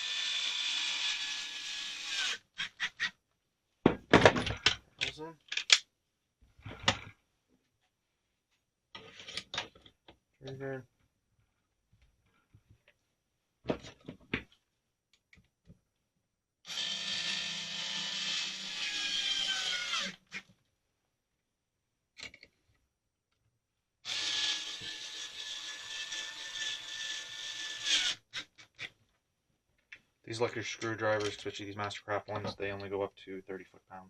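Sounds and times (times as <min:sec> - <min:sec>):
clicks of parts handled: 0:04.5 - 0:05.9
electric screwdriver driving screws: 0:16.7 - 0:20.2.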